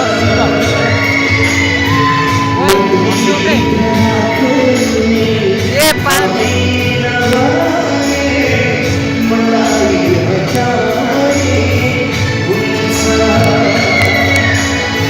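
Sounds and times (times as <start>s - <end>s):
live band pop song with singing: 0.0s - 15.0s
pulsing bass line: 0.2s - 9.1s.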